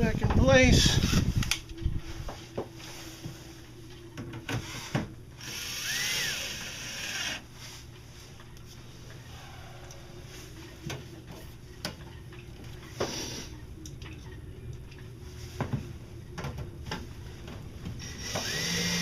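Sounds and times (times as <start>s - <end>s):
cordless drill driving screw: 5.4s - 7.4s, 18.0s - 19.0s.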